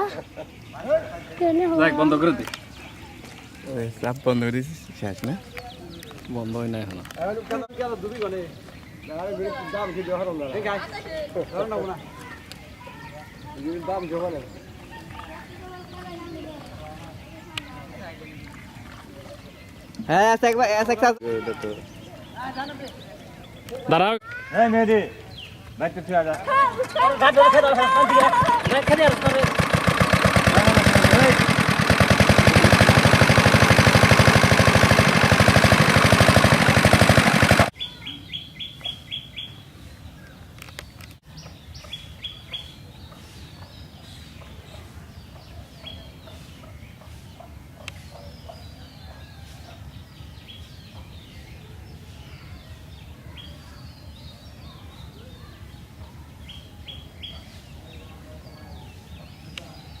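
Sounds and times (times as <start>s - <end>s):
birds chirping: 0.0s - 60.0s
motorcycle engine running: 28.2s - 37.7s.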